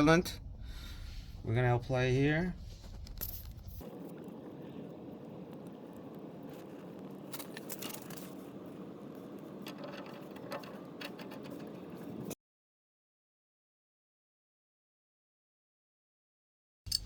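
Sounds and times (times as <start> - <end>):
steady low hum: 0.0 - 12.4
fitting clicking and scraping: 9.4 - 12.4.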